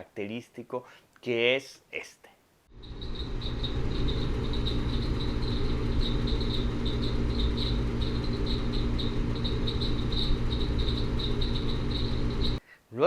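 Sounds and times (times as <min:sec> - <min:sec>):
low machinery hum: 0:02.7 - 0:12.6.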